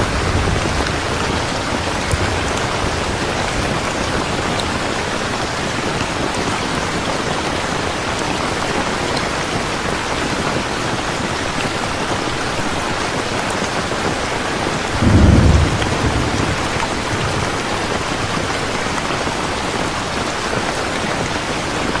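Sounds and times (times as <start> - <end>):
thunder rumble: 0.0 - 5.0, 14.9 - 18.2
heavy rain falling: 0.0 - 22.0.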